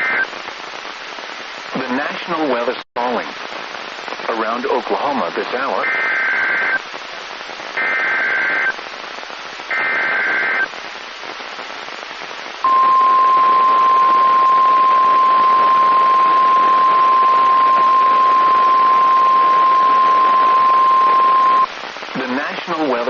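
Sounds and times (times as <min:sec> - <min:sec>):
radio hiss: 0:00.0 - 0:23.0
steady warning alarm tone: 0:12.6 - 0:21.7
digital data bursts: 0:12.6 - 0:23.0.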